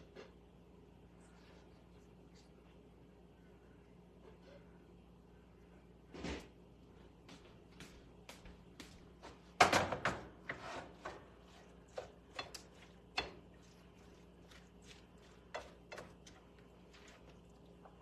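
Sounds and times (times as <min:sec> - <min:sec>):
utensil knocking and scraping in a pan: 0:09.6 - 0:18.0.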